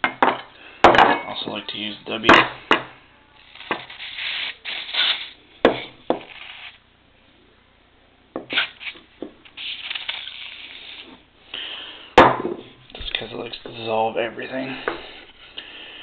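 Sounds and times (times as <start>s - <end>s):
aerosol spray can hissing: 3.5s - 5.4s, 6.2s - 6.8s.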